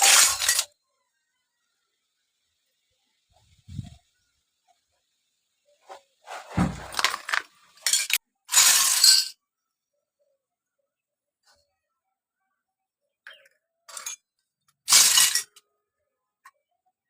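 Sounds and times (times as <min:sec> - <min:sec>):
toy kitchen pieces clinking: 0:00.0 - 0:00.8, 0:06.3 - 0:09.4, 0:13.3 - 0:15.6.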